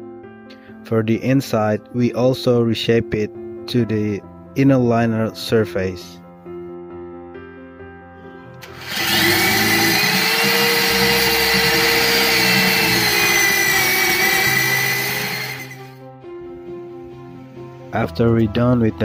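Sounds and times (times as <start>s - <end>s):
power grinder whining: 8.6s - 16.0s.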